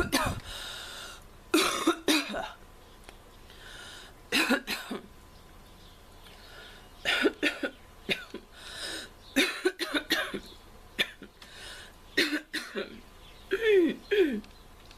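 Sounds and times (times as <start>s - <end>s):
girl coughing: 0.0s - 0.4s, 1.6s - 2.5s, 4.4s - 5.0s, 7.1s - 8.4s, 9.4s - 10.4s, 12.2s - 14.4s
girl breathing in: 0.4s - 1.2s.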